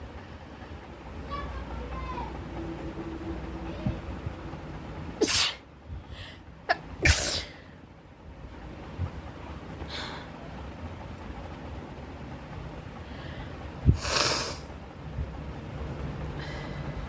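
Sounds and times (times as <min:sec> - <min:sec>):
person sneezing: 0:07.0 - 0:07.6.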